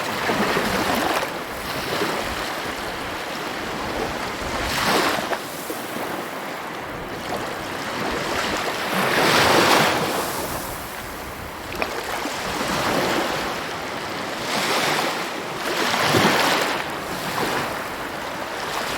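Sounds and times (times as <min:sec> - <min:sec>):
sea waves surging: 0:00.0 - 0:18.9.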